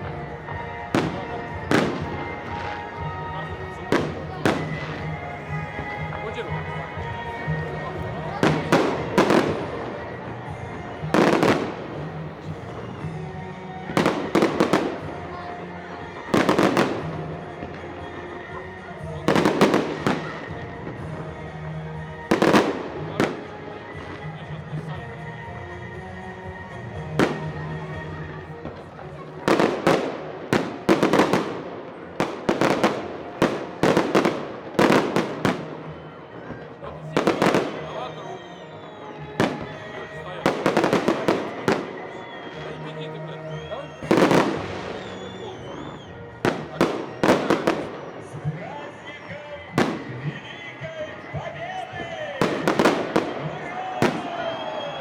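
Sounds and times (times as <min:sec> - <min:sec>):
fireworks bangs: 0:00.0 - 0:13.0, 0:27.2 - 0:55.0.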